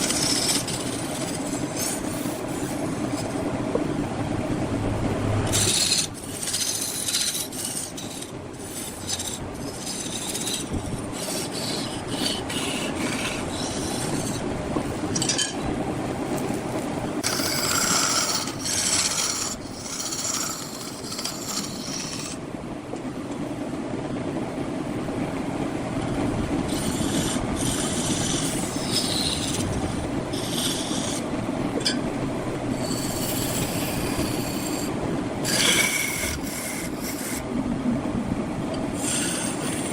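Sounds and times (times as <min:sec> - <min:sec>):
turning tool scraping wood: 0:00.0 - 0:03.4, 0:05.5 - 0:15.6, 0:16.3 - 0:22.4, 0:26.7 - 0:31.3, 0:32.8 - 0:37.4, 0:39.0 - 0:39.9
wood lathe humming: 0:00.0 - 0:04.1, 0:05.1 - 0:22.4, 0:26.1 - 0:31.4, 0:32.4 - 0:37.5, 0:38.7 - 0:39.9.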